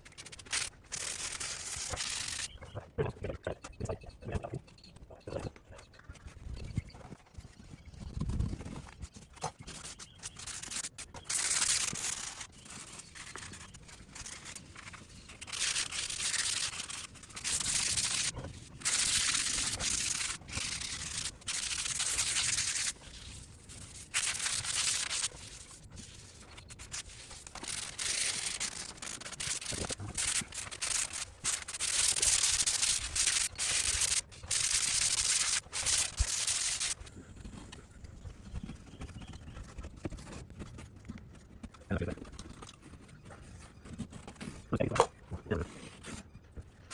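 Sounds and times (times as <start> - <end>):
sanding drywall: 9.6 - 37.0.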